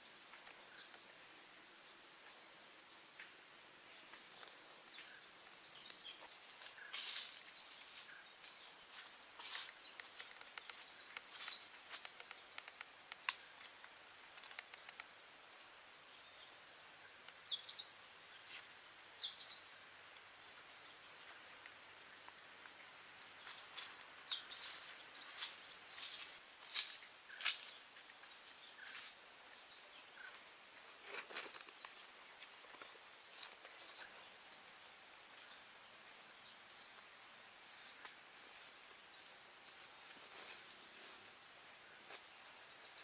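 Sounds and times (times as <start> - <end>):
steady outdoor hiss: 0.0 - 43.0
sharp crackling snaps: 9.4 - 15.7.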